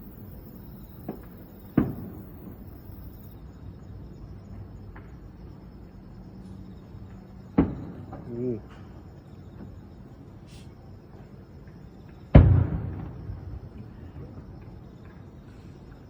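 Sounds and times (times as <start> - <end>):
firework crack: 0.0 - 3.4, 12.2 - 16.0
fireworks booming: 0.0 - 3.4, 7.5 - 9.8, 12.2 - 16.0
insects trilling: 0.0 - 16.0
faint firework pops: 0.9 - 3.3, 7.5 - 8.3, 11.2 - 16.0.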